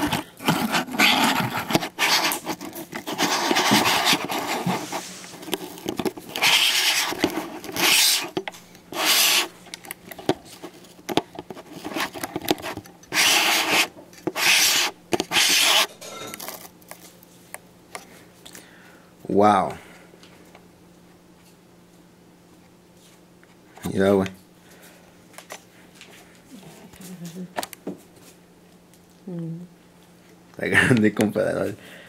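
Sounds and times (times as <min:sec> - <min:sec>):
camera handling rubbing and scraping: 0:00.0 - 0:17.0.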